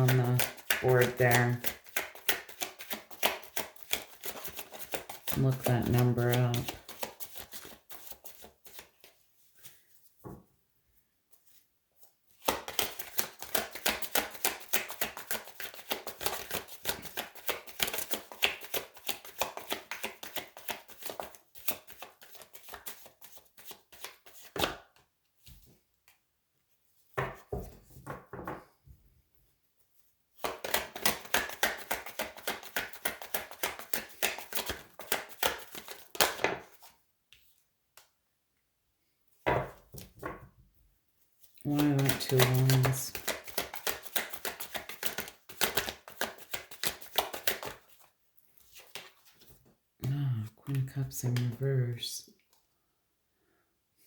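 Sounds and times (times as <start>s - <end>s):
cards being shuffled by hand: 0.0s - 10.0s, 11.3s - 26.2s, 30.0s - 38.1s, 41.4s - 51.6s.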